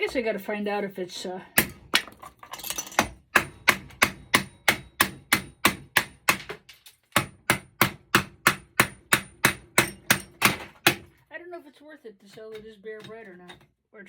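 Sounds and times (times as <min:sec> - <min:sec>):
hammer striking metal: 0:03.0 - 0:06.5, 0:07.2 - 0:11.0.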